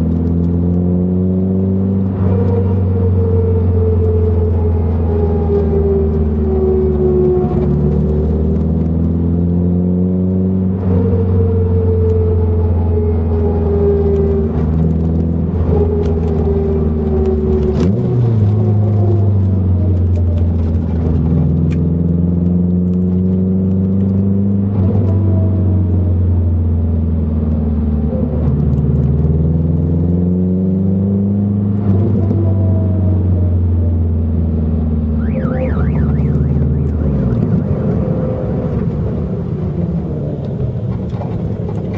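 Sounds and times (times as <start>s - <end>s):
car engine revving: 0.0s - 41.9s
differential whine: 35.1s - 41.9s.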